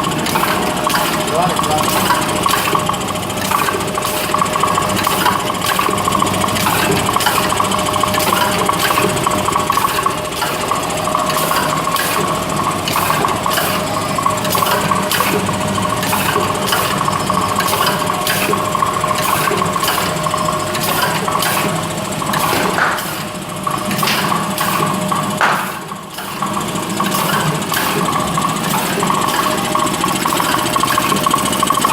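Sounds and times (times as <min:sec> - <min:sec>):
mechanical clacking: 0:00.0 - 0:31.9
motor hum: 0:00.0 - 0:31.9.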